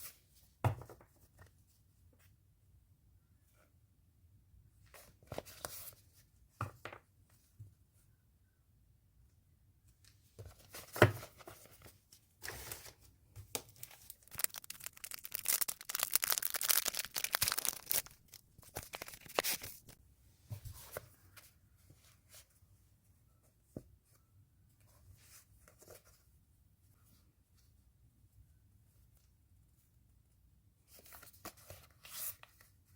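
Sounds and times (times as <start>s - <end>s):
packaging being torn open: 13.6s - 20.0s
packaging rustling and crinkling: 13.6s - 20.0s.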